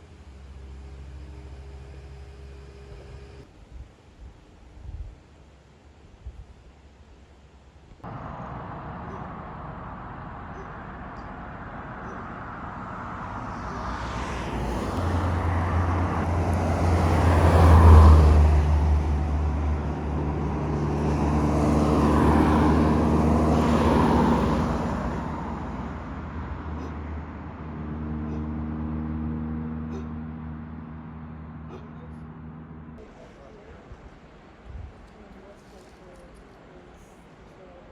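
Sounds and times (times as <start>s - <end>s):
engine droning: 0.0s - 3.5s, 8.0s - 34.6s
vehicles passing by: 0.0s - 3.6s, 7.1s - 37.9s.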